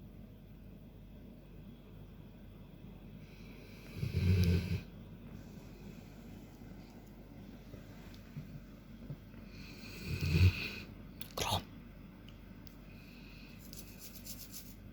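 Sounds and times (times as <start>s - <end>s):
dog snoring: 3.6s - 4.9s, 9.5s - 11.6s.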